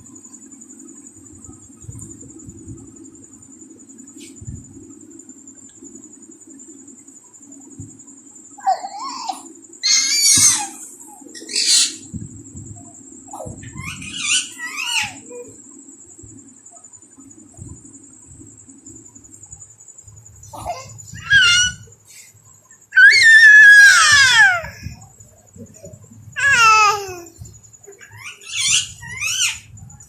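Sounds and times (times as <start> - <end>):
parrot squawking: 21.2 - 21.8, 28.1 - 29.6.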